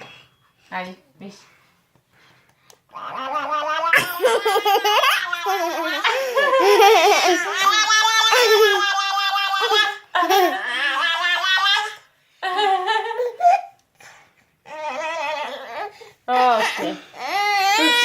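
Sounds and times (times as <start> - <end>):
baby laughing: 2.9 - 13.8.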